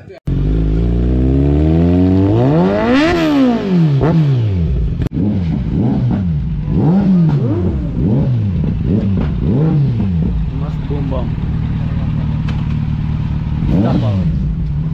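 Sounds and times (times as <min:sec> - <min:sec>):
motorcycle engine revving: 0:00.0 - 0:14.9.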